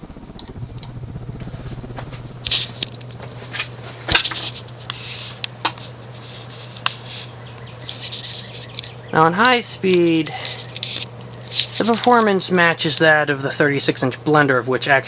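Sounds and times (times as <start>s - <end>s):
ceiling fan motor hum: 0.0s - 15.0s
sharp clicks: 0.3s - 3.2s.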